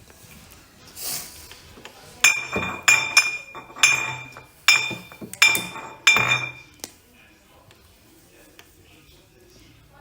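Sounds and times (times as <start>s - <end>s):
glass being tapped: 2.2s - 6.7s.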